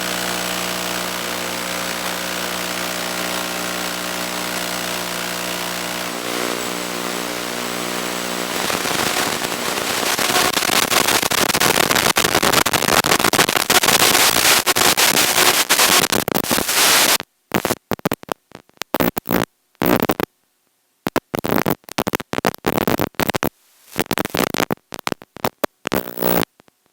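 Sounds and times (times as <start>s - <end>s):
electrical buzz: 0.0s - 17.8s
crackling static: 0.0s - 26.9s.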